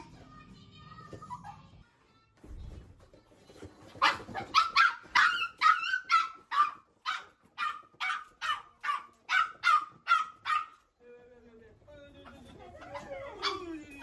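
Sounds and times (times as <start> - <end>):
dog barking: 4.0 - 10.8.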